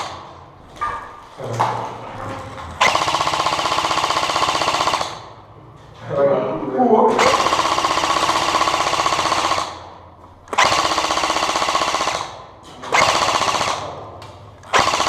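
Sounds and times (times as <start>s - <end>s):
electric gun firing bursts: 0.0s - 0.3s, 2.8s - 5.4s, 7.2s - 14.0s, 14.6s - 15.0s.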